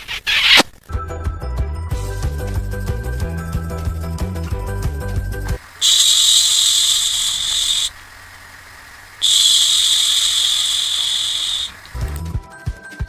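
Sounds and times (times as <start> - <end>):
music: 0.9 - 5.6, 11.9 - 13.0
long hissing sounds: 5.6 - 12.0.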